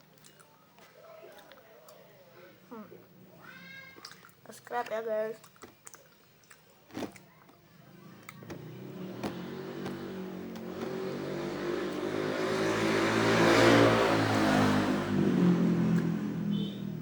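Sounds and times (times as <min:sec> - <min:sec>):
vehicle approaching on road: 0:08.4 - 0:17.0.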